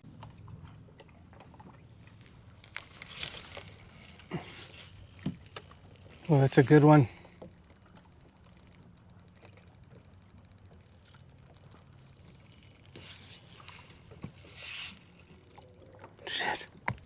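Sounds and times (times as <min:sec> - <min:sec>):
fishing reel ratcheting ticks: 0:02.2 - 0:17.0.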